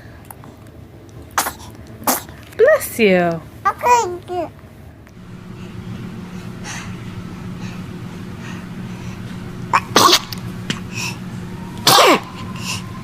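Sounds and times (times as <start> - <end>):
baby sneezing: 1.4 - 2.3, 9.8 - 10.2, 11.9 - 12.3.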